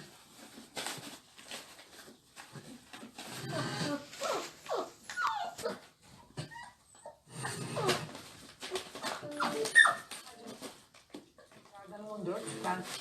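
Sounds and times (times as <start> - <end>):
dog whining: 3.4 - 10.3.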